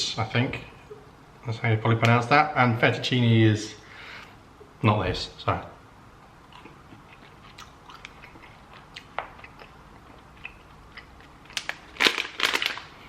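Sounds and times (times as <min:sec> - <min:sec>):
person chewing gummy sweet: 0:06.4 - 0:12.9
wet mouth clicks: 0:06.5 - 0:11.3.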